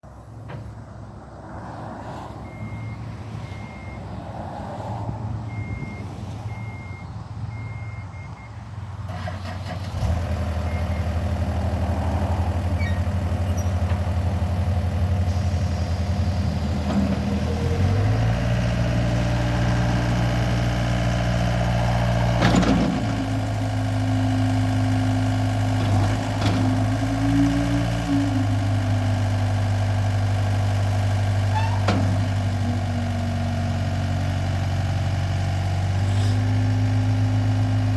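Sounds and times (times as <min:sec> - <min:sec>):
diesel engine starting and idling: 0:00.2 - 0:37.9.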